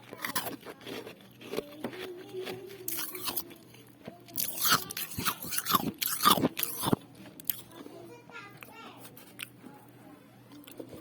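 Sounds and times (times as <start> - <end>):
ice crunching while chewed: 0.0 - 7.7.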